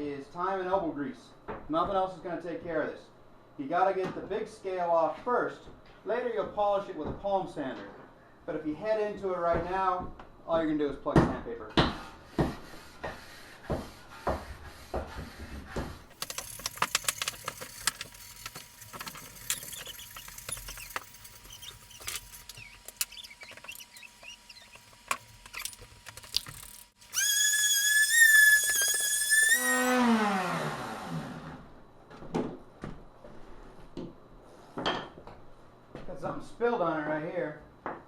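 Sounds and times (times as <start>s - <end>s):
scraping and scrubbing metal: 16.1s - 30.0s
small electric motor whining: 16.2s - 31.6s.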